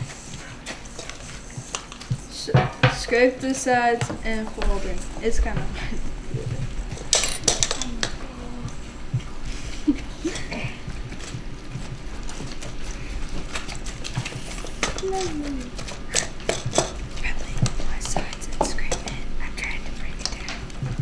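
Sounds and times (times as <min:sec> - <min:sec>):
faint murmured voices: 0:00.0 - 0:13.2, 0:14.4 - 0:20.7
spoon stirring and scraping bowl: 0:00.0 - 0:21.0
utensil knocking against bowl: 0:02.5 - 0:04.8.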